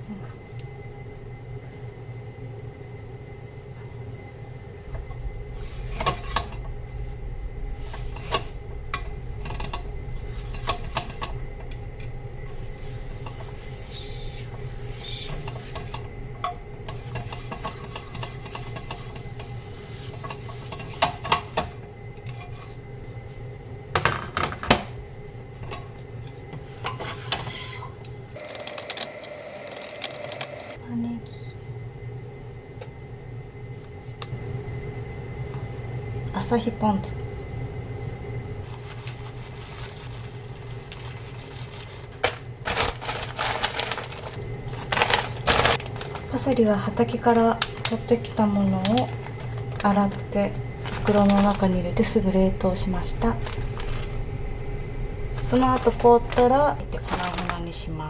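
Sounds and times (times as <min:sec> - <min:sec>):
hiss: 0:05.5 - 0:11.4, 0:12.4 - 0:16.1, 0:16.9 - 0:22.8
utensils clinking and scraping: 0:12.5 - 0:22.7, 0:25.6 - 0:30.8, 0:38.7 - 0:46.6, 0:47.6 - 0:51.9, 0:53.1 - 0:54.2, 0:55.4 - 0:57.7.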